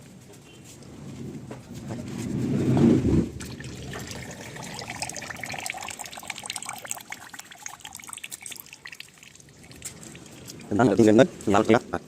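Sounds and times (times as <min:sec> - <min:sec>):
liquid trickling and dripping: 0:03.4 - 0:11.5
small irregular ticks: 0:08.2 - 0:10.9.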